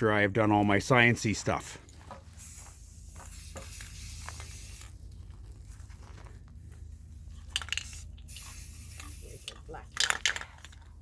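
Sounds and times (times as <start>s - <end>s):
steady low hum: 0.0s - 11.0s
spray paint can hissing: 2.3s - 5.0s, 7.5s - 10.4s.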